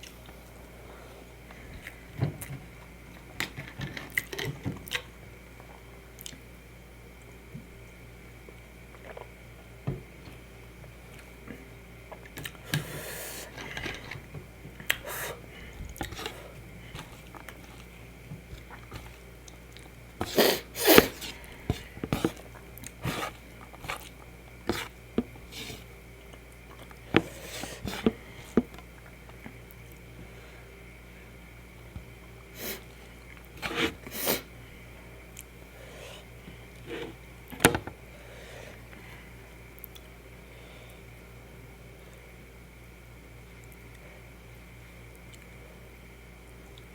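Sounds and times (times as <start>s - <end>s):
faint steady hum: 0.0s - 46.9s
chewing and wet mouth sounds: 8.4s - 9.4s, 14.8s - 27.1s.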